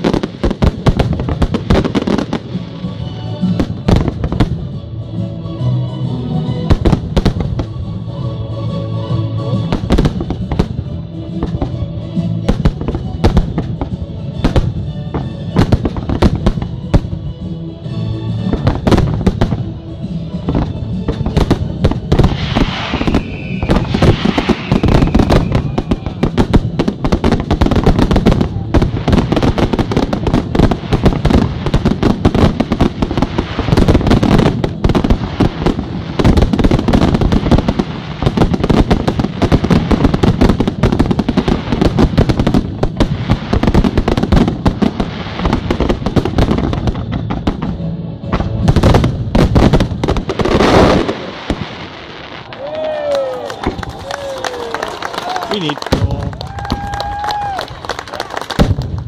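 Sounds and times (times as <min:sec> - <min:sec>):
fireworks bursts and crackling: 0:00.0 - 0:04.9, 0:06.6 - 0:08.2, 0:09.3 - 0:59.0
firework whistle falling in pitch: 0:22.5 - 0:26.4.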